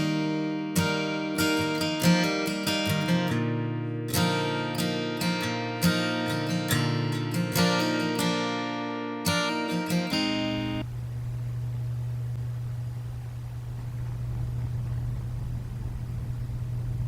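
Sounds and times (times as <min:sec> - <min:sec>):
acoustic guitar chords: 0:00.0 - 0:10.9.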